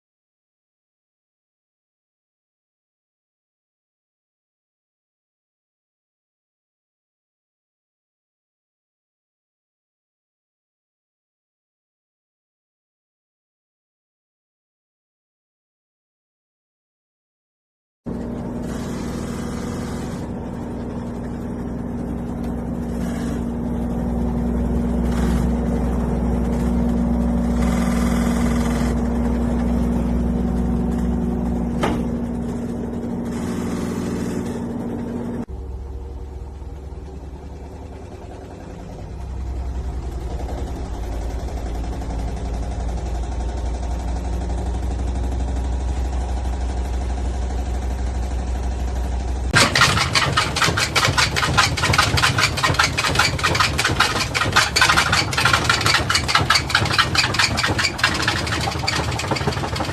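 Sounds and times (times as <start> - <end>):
washing machine hum: 18.1 - 59.9.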